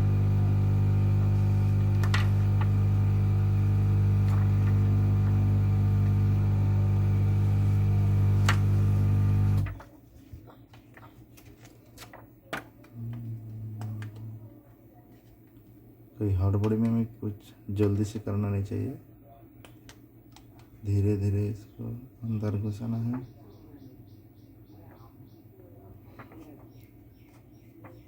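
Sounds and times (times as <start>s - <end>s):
hot-air blower humming: 0.0s - 9.8s.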